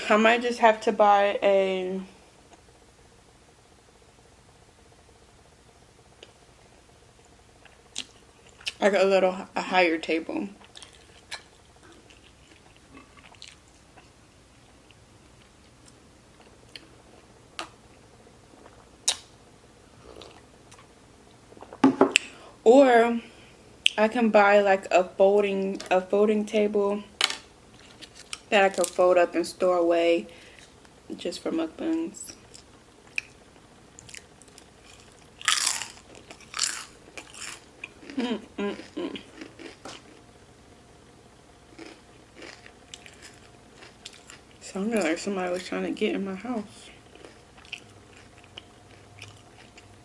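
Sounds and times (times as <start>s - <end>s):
person chewing: 7.6s - 8.8s, 10.6s - 17.8s, 18.5s - 19.3s, 20.0s - 20.9s, 32.5s - 40.2s, 41.7s - 44.6s, 47.0s - 50.0s
crunching bites: 34.0s - 38.2s.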